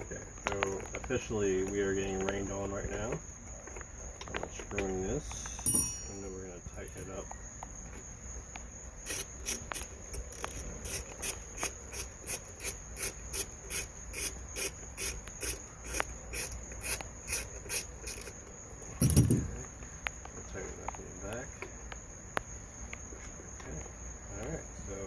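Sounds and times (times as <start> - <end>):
hand tool rasping on screw: 14.2 - 18.3
loud thump: 19.0 - 19.6.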